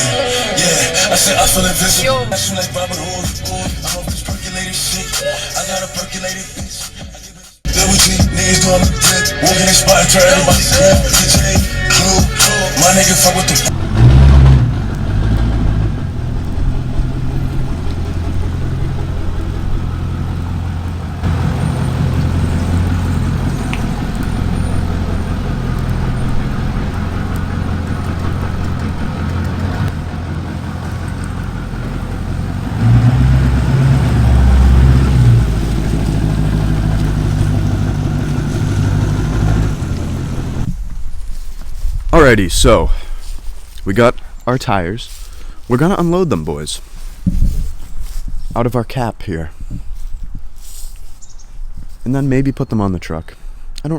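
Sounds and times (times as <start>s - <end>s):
diesel truck engine running: 0.0s - 40.9s.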